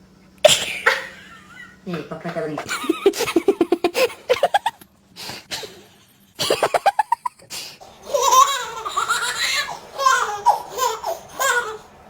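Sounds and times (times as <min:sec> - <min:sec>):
baby laughing and squealing: 0:08.0 - 0:11.9.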